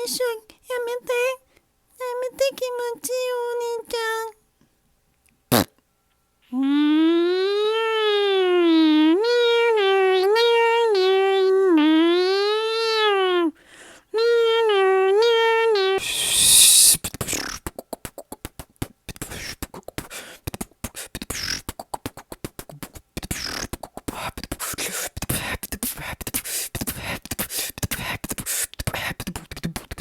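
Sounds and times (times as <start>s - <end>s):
beatbox clicks and pops: 5.5s - 5.8s, 16.0s - 25.4s, 26.2s - 30.0s
man humming: 6.5s - 13.5s, 14.2s - 17.0s
mouth hiss: 16.0s - 17.6s.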